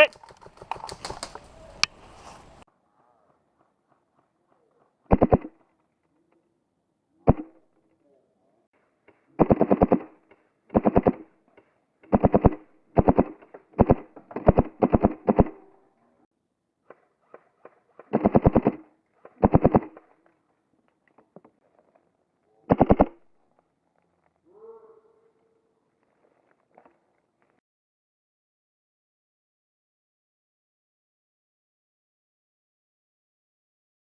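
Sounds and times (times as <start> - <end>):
airsoft gun firing bursts: 9.3 - 11.2, 12.0 - 15.6, 18.0 - 20.0, 22.7 - 23.2.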